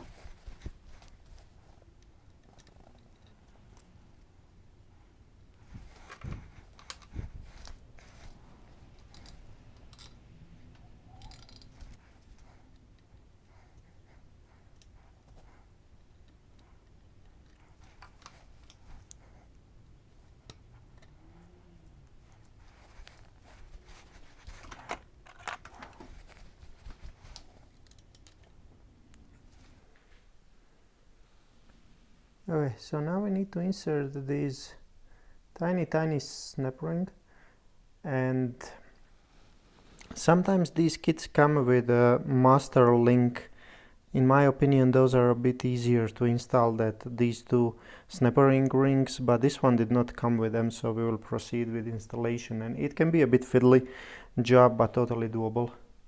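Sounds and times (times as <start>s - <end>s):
metallic clicks and rattles: 9.0s - 13.2s, 22.8s - 28.6s
hand tools clicking and rattling: 11.1s - 13.2s.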